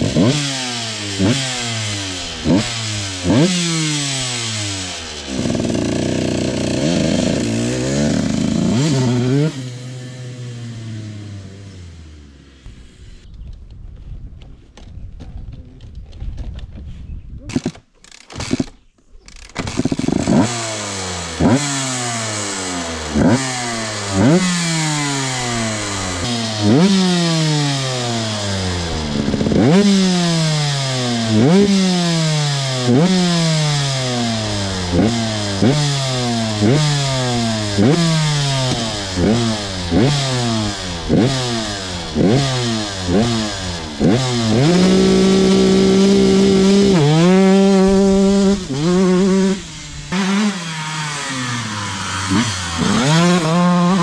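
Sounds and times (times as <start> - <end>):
motorcycle engine revving: 0.0 - 13.4, 19.4 - 54.0.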